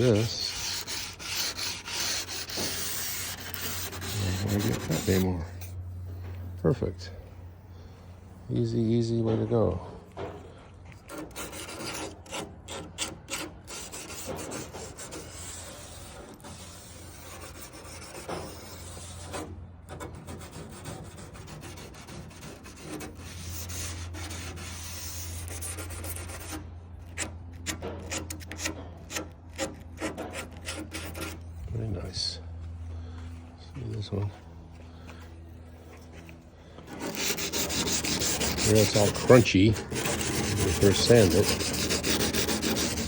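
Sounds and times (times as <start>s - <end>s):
sanding cloth rasping on metal: 0.0s - 5.6s, 11.1s - 26.6s, 36.9s - 43.0s.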